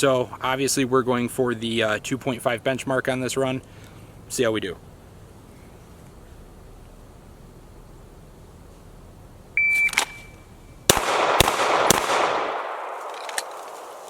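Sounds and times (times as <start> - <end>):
shot timer beep: 9.6 - 10.4
handgun shots with echo: 10.9 - 14.0.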